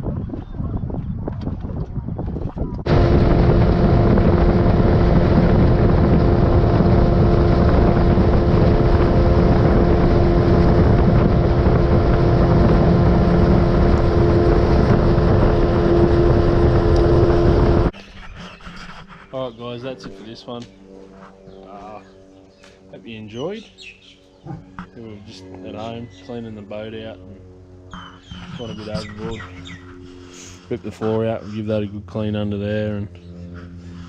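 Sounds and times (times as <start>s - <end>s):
wind noise on microphone: 0.0s - 19.3s
outboard motor running: 1.4s - 18.0s, 24.5s - 34.0s.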